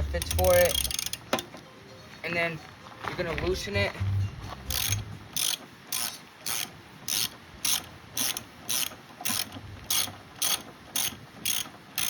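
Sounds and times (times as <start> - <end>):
socket ratchet wrench clicking: 0.0 - 1.4, 4.7 - 12.0.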